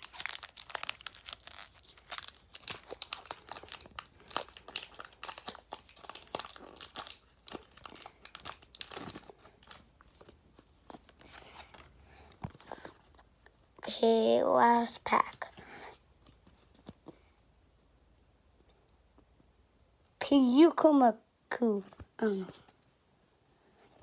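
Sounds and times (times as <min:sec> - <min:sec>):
foil wrapper crinkling and tearing: 0:00.0 - 0:13.2.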